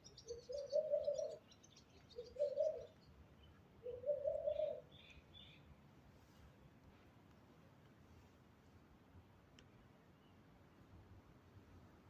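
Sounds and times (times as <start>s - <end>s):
small songbirds chirping: 0.0s - 6.3s, 9.6s - 11.0s
dove cooing: 0.2s - 1.4s, 2.1s - 3.0s, 3.8s - 4.9s.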